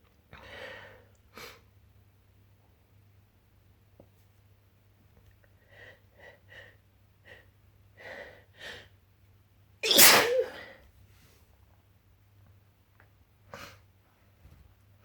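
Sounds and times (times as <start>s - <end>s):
person sneezing: 9.8s - 10.8s.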